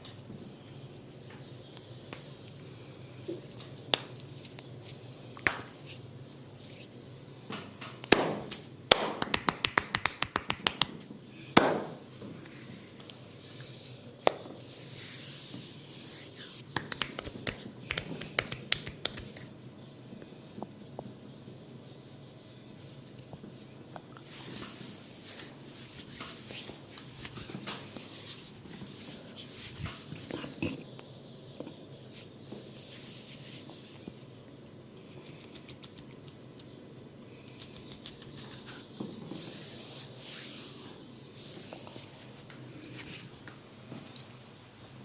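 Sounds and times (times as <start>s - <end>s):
hand snaps and taps: 8.0s - 11.0s, 16.8s - 19.5s
rubbing on skin and hair: 14.6s - 19.5s, 21.1s - 30.6s, 32.1s - 34.0s, 37.6s - 42.3s.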